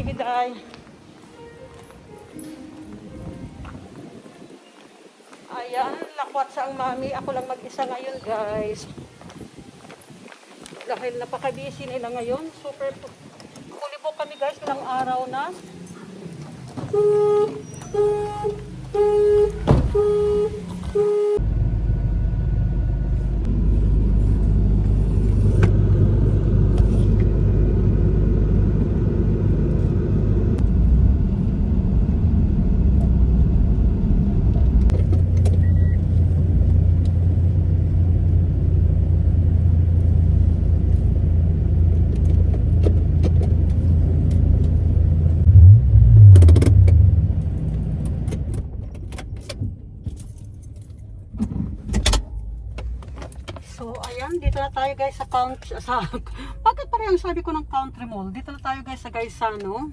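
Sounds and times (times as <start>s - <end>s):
motor vehicle rumbling: 14.7s - 59.9s.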